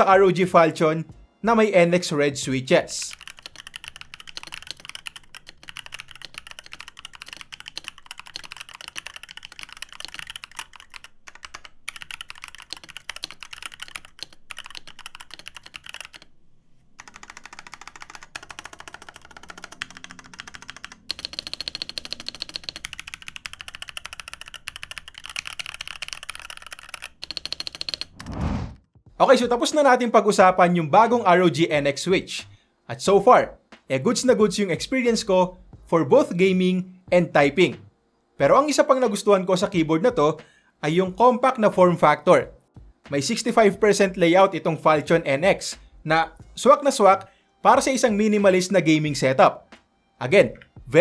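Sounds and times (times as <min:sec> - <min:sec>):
fast typing on mechanical keyboard: 0:03.1 - 0:16.3, 0:17.0 - 0:28.4.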